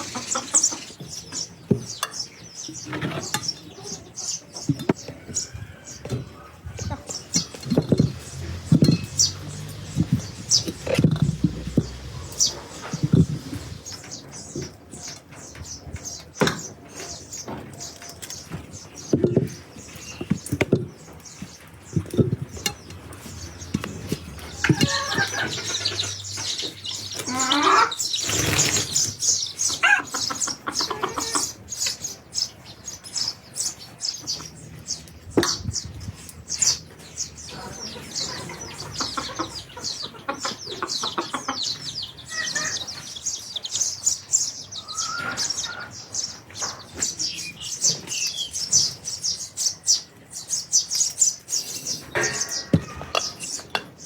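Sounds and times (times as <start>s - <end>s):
birds chirping: 0.0s - 54.0s
lower bird calls: 35.4s - 49.0s.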